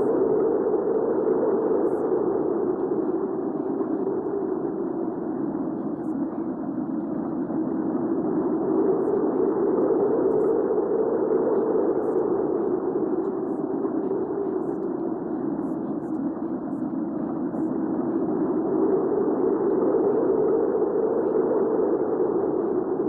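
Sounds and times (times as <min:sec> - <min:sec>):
low rushing wind: 0:00.0 - 0:15.6, 0:16.3 - 0:23.0.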